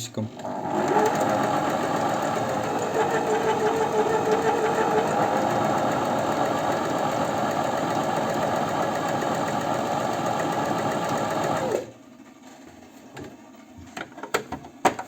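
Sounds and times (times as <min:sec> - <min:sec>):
sewing machine running: 0:00.4 - 0:11.9.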